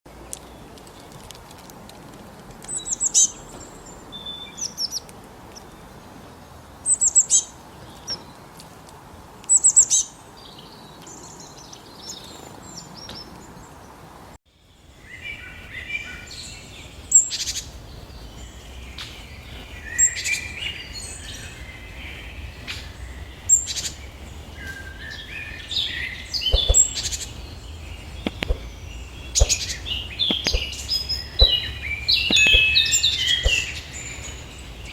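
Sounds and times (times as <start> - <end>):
birds chattering and twittering: 0.1 - 34.9
piercing high bird notes: 24.7 - 34.9
bird calls dropping in pitch: 26.4 - 27.2, 28.1 - 33.9.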